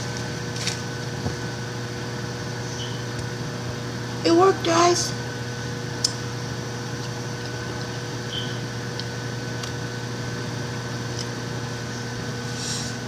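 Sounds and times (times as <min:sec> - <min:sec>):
microwave oven humming: 0:00.0 - 0:13.0.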